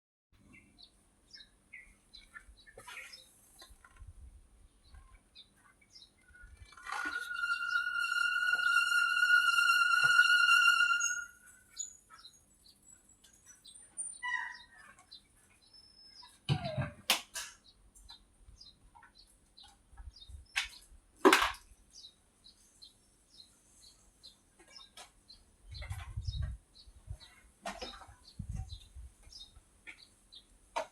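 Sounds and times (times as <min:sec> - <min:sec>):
small birds chirping: 0:00.5 - 0:04.0, 0:04.6 - 0:07.8, 0:11.7 - 0:16.4, 0:17.6 - 0:21.0, 0:21.9 - 0:30.6.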